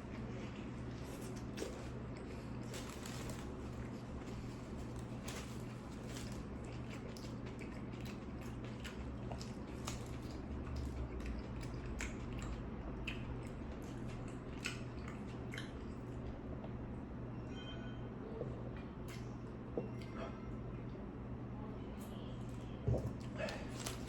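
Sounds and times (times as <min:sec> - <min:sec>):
person chewing and crunching: 0:00.1 - 0:16.2.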